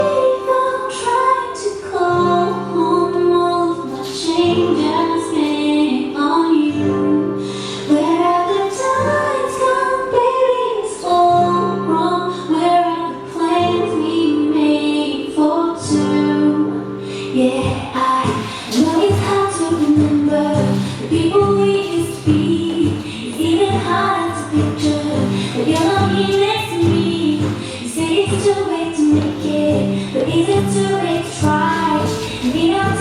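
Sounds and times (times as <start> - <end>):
held chords: 0.0 - 33.0
high voice singing: 17.4 - 33.0.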